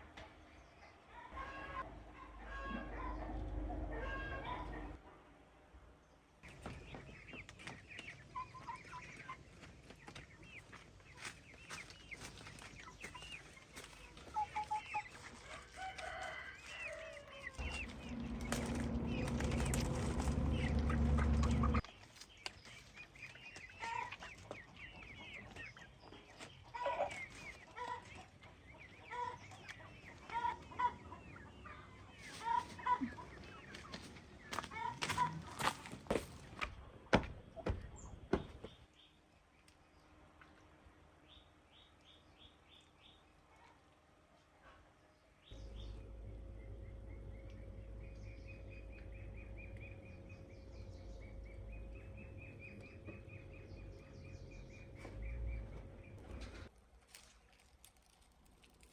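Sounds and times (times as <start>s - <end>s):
chickens clucking: 1.0s - 5.1s, 6.4s - 38.8s, 44.4s - 56.7s
loud low rumbling: 17.6s - 21.8s, 45.6s - 56.7s.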